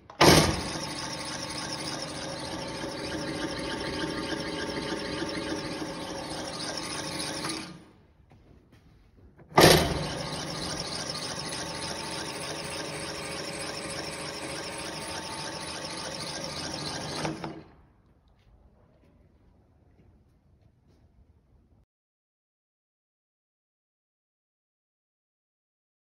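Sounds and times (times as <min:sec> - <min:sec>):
grinder whining: 0:00.0 - 0:07.9, 0:09.6 - 0:17.8.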